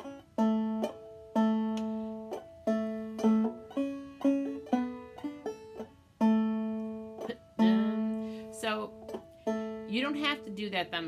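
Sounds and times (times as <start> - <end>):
banjo picking single notes: 0.0 - 11.0.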